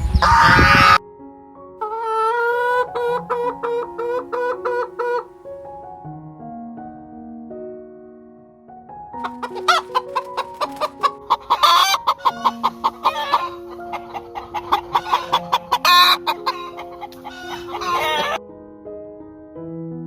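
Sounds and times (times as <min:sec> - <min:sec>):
chicken squawks: 0:00.0 - 0:01.0, 0:01.8 - 0:05.3, 0:09.2 - 0:18.4
chickens clucking: 0:00.0 - 0:01.0, 0:01.8 - 0:05.3, 0:09.2 - 0:18.4
soft piano music: 0:00.0 - 0:20.0.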